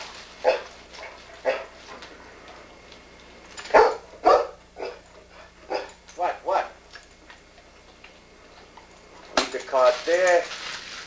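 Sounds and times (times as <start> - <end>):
dog barking: 0.4 - 0.8, 1.4 - 1.8, 3.7 - 5.1, 5.7 - 6.7.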